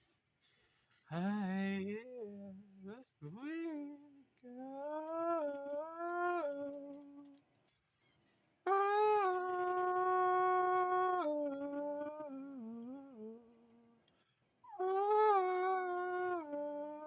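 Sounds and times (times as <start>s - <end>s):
person singing wordless notes: 1.1s - 7.4s.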